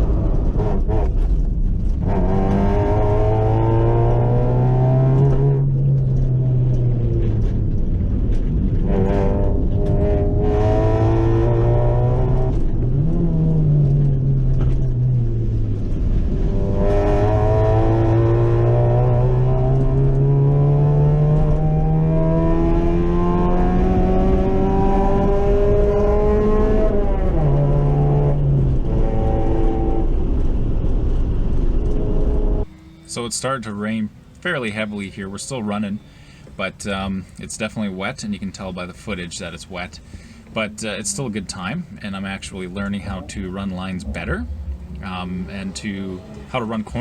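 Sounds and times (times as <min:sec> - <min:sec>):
car engine revving: 0:00.0 - 0:36.6, 0:37.3 - 0:47.0
road and wind noise: 0:00.0 - 0:47.0.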